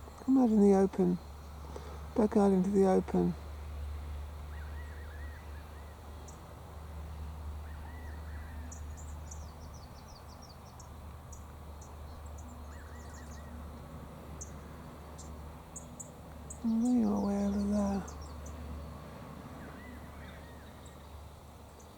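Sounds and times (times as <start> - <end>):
small birds chirping: 7.1 - 19.0.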